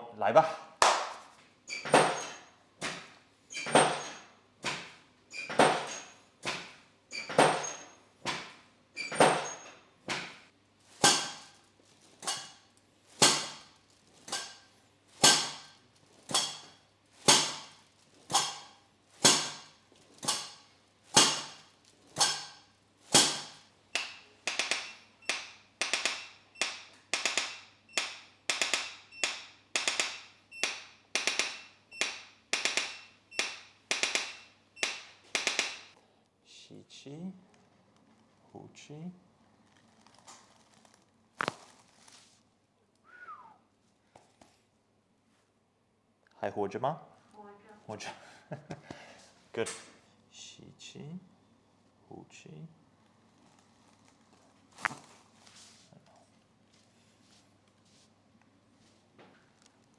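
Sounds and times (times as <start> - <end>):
sharp ringing knocks: 23.2 - 36.0.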